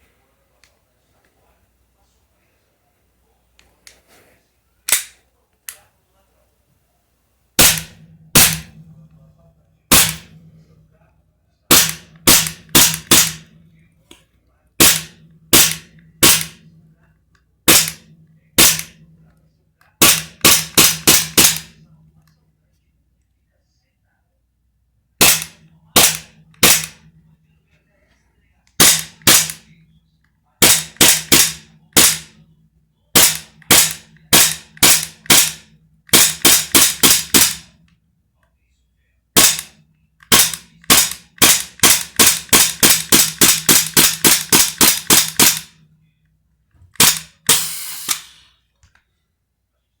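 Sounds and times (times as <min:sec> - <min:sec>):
airsoft pistol shots: 0:07.6 - 0:08.9, 0:09.9 - 0:10.5, 0:11.7 - 0:13.6, 0:14.8 - 0:16.7, 0:17.7 - 0:19.0, 0:20.0 - 0:21.8, 0:25.2 - 0:27.1, 0:28.8 - 0:29.7, 0:30.6 - 0:32.4, 0:33.2 - 0:37.7, 0:39.4 - 0:39.7, 0:40.3 - 0:45.7, 0:47.0 - 0:48.5
gas hiss: 0:47.5 - 0:48.4.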